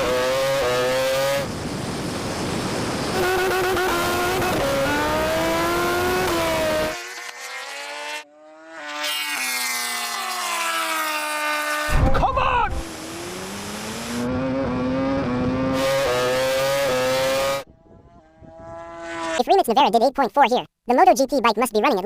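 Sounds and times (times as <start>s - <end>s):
high-revving engine upshifting: 0.0s - 12.0s, 12.7s - 19.4s
rush of wind: 1.1s - 5.6s, 17.6s - 18.9s.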